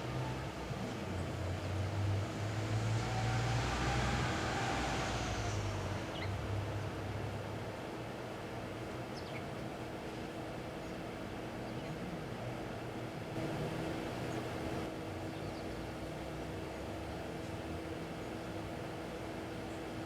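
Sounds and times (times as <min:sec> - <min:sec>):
rushing noise: 0:02.4 - 0:06.1.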